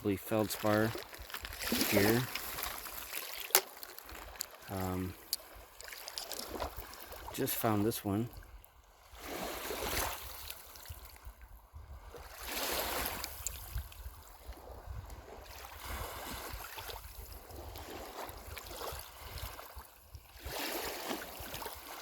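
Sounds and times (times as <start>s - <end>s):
small waves on pebbly shore: 0.0s - 11.2s, 12.0s - 22.0s
wind rumble on microphone: 8.3s - 21.9s.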